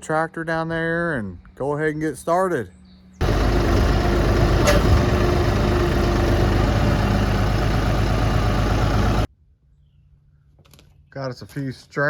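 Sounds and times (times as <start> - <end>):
tractor engine idling: 3.2 - 9.3.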